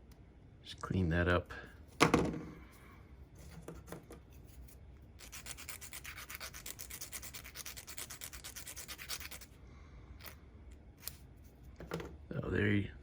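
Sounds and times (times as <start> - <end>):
plastic part being sanded: 5.2 - 9.5.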